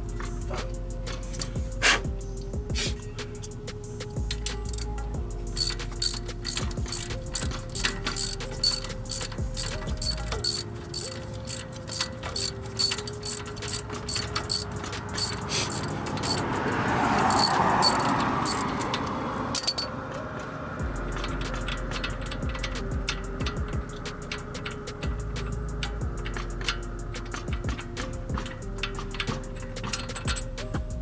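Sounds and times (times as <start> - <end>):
quiet background music: 0.0 - 31.0
socket ratchet clicking: 4.4 - 5.0, 5.6 - 19.9.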